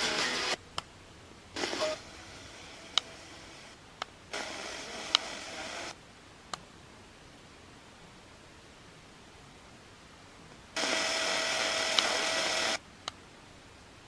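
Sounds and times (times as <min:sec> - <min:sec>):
radio hiss: 0:00.0 - 0:00.6, 0:01.5 - 0:06.0, 0:10.8 - 0:12.8
radio station audio fragments: 0:01.6 - 0:06.0, 0:10.8 - 0:12.8
sharp radio clicks: 0:04.4 - 0:06.0, 0:10.8 - 0:12.8.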